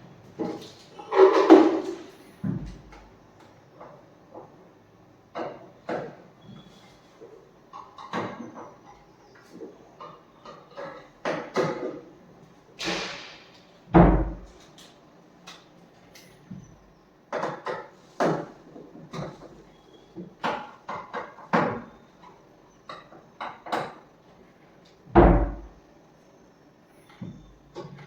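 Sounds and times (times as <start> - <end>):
wooden door closing thud: 13.9 - 14.5, 25.1 - 25.8.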